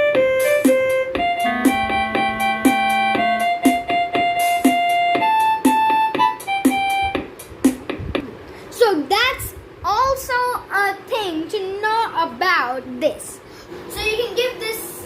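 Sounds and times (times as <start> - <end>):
keyboard accompaniment chords: 0.0 - 8.2
steady drum beat: 0.1 - 8.4.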